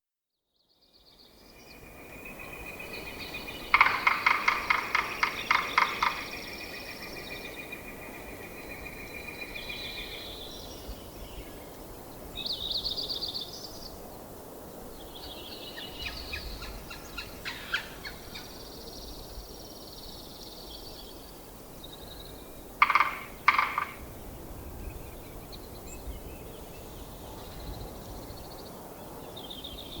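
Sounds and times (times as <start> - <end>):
songbirds whistling and trilling: 1.2 - 11.8, 15.0 - 19.2, 19.8 - 30.0
woodpecker drumming on wood: 3.6 - 6.4, 22.8 - 24.0.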